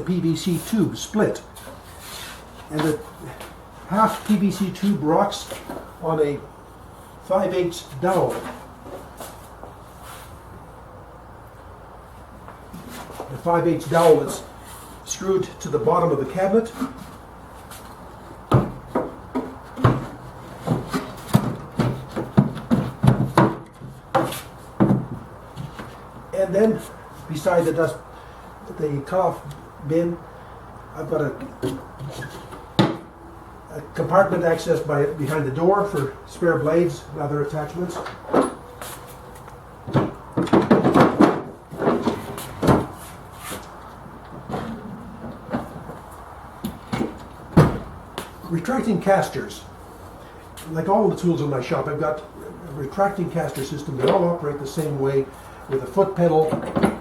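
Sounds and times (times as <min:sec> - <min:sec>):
wooden knocks and rubbing: 0:18.4 - 0:26.0, 0:39.8 - 0:48.3.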